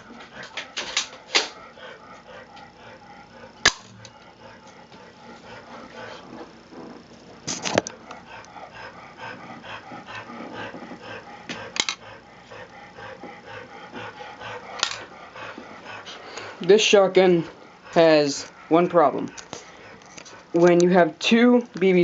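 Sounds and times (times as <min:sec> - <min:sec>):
airsoft shotgun pumping and firing: 0:03.6 - 0:04.0.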